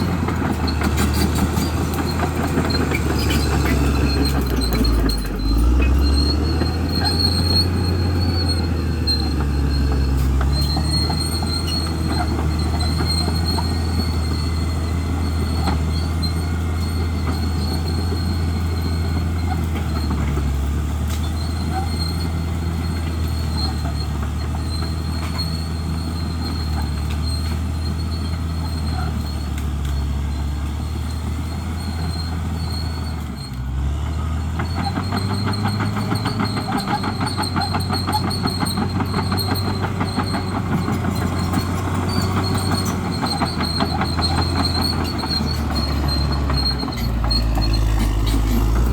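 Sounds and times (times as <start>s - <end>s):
high-pitched squeal: 0.0s - 20.1s, 39.4s - 48.9s
bulldozer diesel engine: 0.0s - 48.9s.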